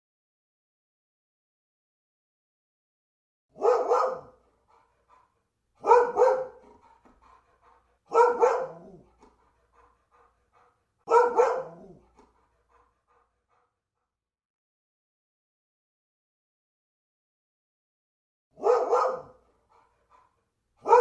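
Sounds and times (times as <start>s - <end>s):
dog barking: 3.5s - 13.7s, 18.6s - 21.0s.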